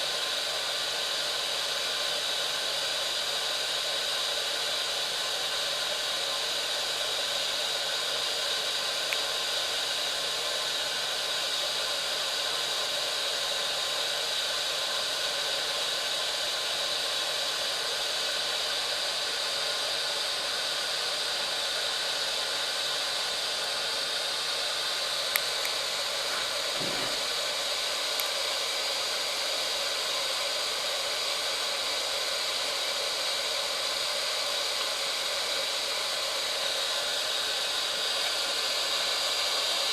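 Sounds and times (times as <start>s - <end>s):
hot air gun blowing: 20.4s - 39.8s.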